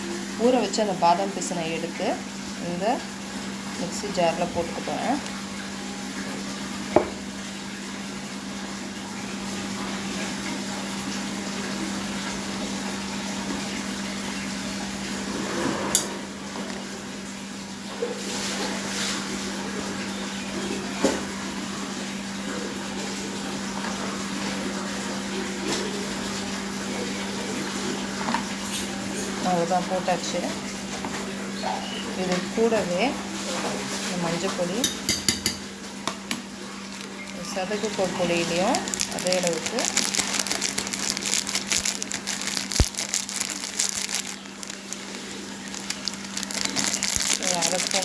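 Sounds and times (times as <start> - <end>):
crinkling and rustling handling: 36.5 - 48.0.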